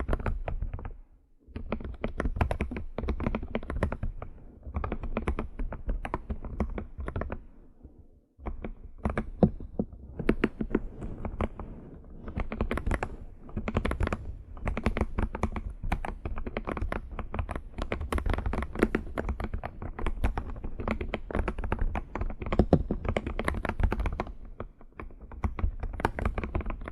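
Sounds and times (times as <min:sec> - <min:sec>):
fast typing on a keyboard: 0:00.0 - 0:07.5, 0:08.4 - 0:26.9.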